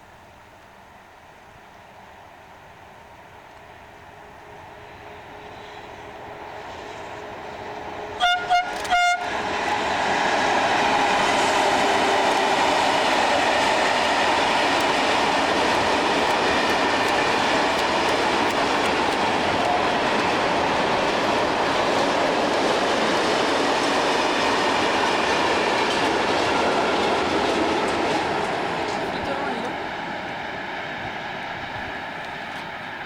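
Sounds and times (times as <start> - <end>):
train passing: 0.8 - 33.0
train horn toots: 8.0 - 9.9
wheels clicking over rail joints: 8.2 - 29.8.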